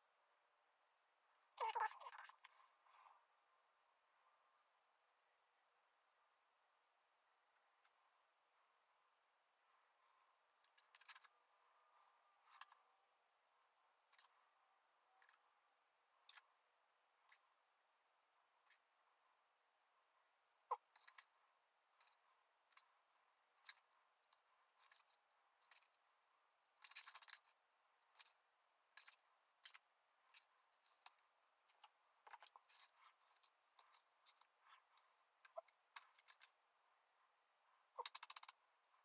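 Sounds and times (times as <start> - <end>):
small hand tools clicking and scraping: 10.6 - 11.4, 23.6 - 26.0, 26.8 - 36.6.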